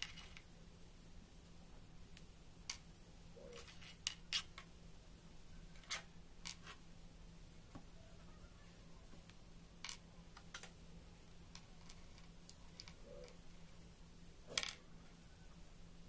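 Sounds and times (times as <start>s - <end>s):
steady low hum: 0.0s - 16.0s
small objects clicking and tapping: 2.1s - 2.9s, 9.2s - 10.8s, 11.4s - 13.4s.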